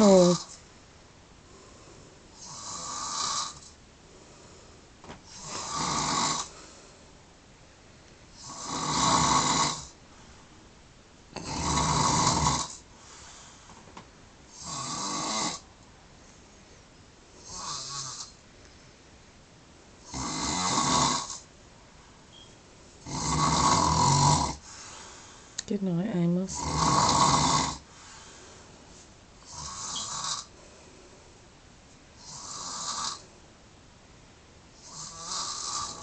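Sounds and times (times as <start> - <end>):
man snoring: 0.0 - 0.5, 2.3 - 3.8, 5.3 - 6.5, 8.3 - 10.0, 11.4 - 12.9, 14.5 - 15.6, 17.4 - 18.4, 20.0 - 21.5, 23.0 - 24.7, 26.5 - 27.9, 29.4 - 30.5, 32.2 - 33.3, 34.8 - 36.0.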